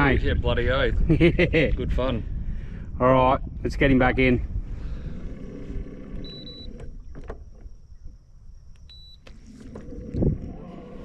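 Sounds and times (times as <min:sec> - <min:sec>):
short high beeps: 0:06.2 - 0:06.7, 0:08.9 - 0:09.2.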